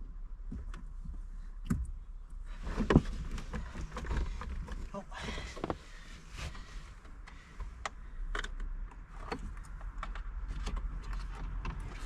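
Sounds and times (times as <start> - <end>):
plastic dashboard creaking: 0.4 - 12.0
sharp clicks and knocks: 7.2 - 12.0.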